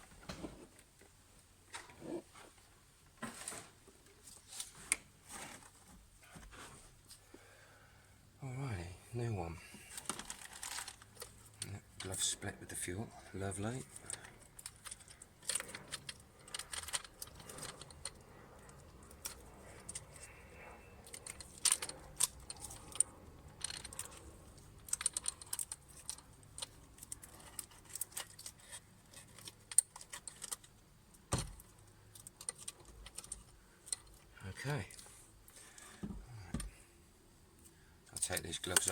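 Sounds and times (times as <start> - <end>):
clicks and rattles of handling parts: 9.8 - 36.8, 37.6 - 38.9.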